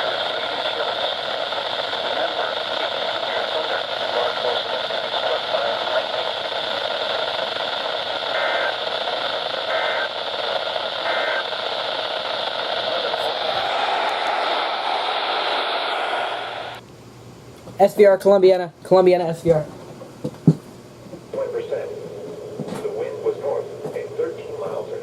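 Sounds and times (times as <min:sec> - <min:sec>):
radio static hiss: 0:00.0 - 0:16.8, 0:21.2 - 0:25.0
two-tone data bursts: 0:08.2 - 0:16.8.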